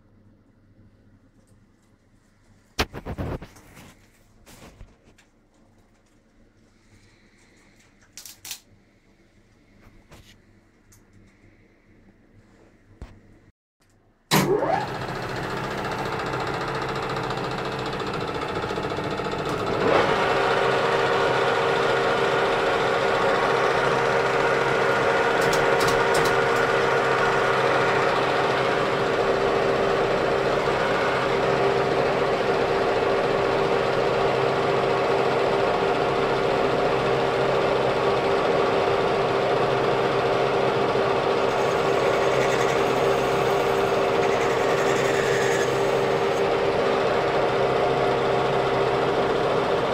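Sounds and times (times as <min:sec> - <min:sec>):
metal lathe geared hum: 0:14.4 - 0:49.9.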